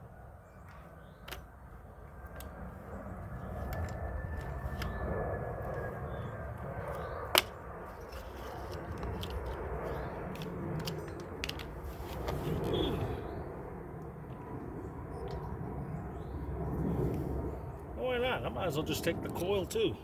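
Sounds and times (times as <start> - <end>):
steady low rumble: 0.0 - 20.0.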